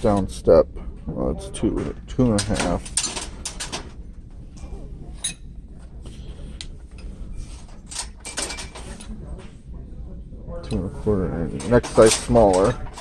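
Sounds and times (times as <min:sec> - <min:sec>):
metal parts clinking and knocking: 0:02.2 - 0:04.0, 0:07.6 - 0:09.1, 0:11.5 - 0:13.0.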